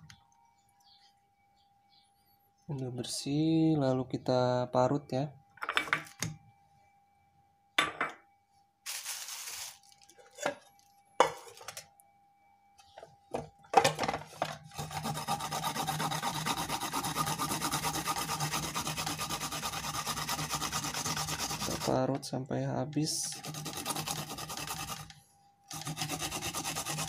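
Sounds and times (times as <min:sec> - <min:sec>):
root grated on a grater: 0:14.7 - 0:22.0, 0:23.2 - 0:27.0.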